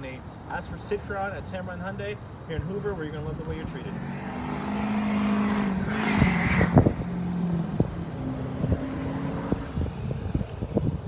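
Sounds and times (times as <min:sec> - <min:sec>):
engine humming: 0:03.0 - 0:10.8.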